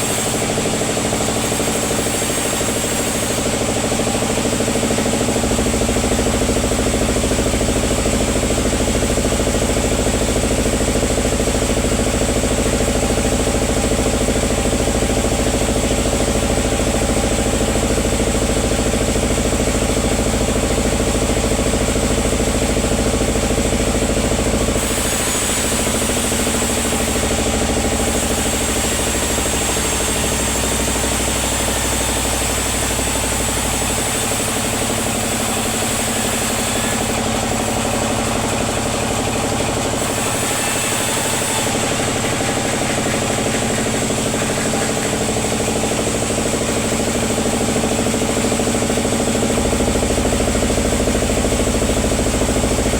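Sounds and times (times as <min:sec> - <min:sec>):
sawmill machinery humming: 0:00.0 - 0:52.9.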